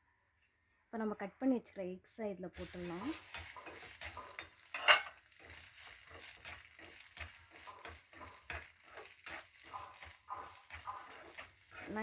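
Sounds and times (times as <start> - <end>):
oil sizzling: 2.6 - 12.0
spoon scraping a pan: 2.6 - 12.0.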